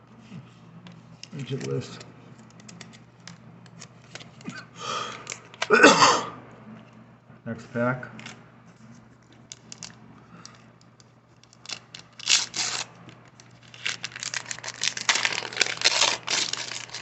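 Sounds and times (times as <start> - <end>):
wax paper wrapper crinkling: 11.3 - 17.0
wrapper ripping: 11.4 - 17.0.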